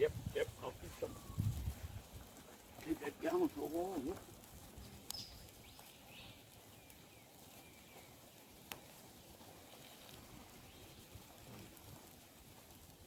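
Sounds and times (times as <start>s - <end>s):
campfire popping: 0.0s - 13.0s.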